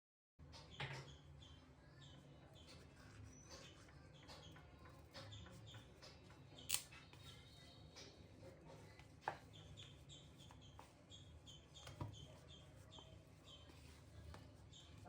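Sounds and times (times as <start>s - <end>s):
faint bird chirps: 0.6s - 15.0s
sharp clicks: 6.7s - 6.9s.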